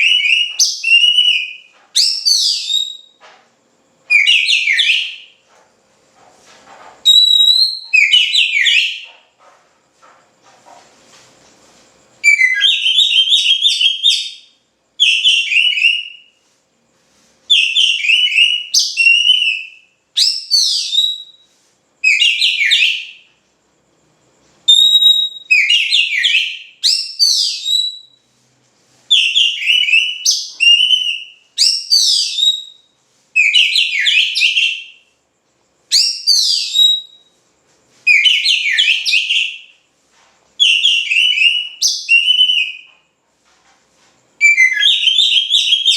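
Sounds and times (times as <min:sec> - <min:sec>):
bird singing whistled trills: 0:00.0 - 0:03.2, 0:04.1 - 0:05.4, 0:07.0 - 0:09.1, 0:12.2 - 0:16.4, 0:17.5 - 0:23.3, 0:24.6 - 0:28.3, 0:29.1 - 0:35.1, 0:35.9 - 0:37.4, 0:38.1 - 0:39.8, 0:40.6 - 0:42.9, 0:44.4 - 0:45.9.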